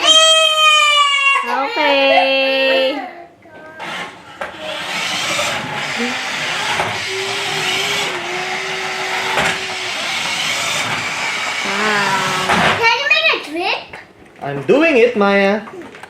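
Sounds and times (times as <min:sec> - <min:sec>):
toy car motor whirring: 0:03.7 - 0:12.8.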